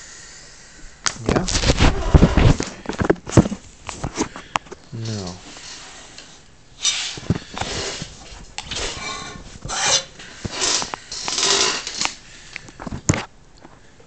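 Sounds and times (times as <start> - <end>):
rag rustling scrapes: 5.1 - 12.2.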